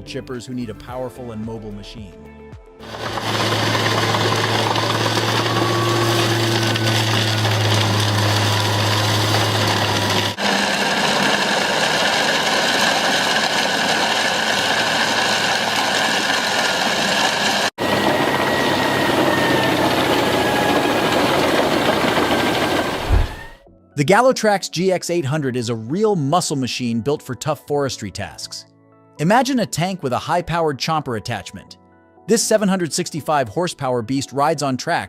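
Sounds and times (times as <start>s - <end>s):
heavy machinery running: 2.8s - 23.6s.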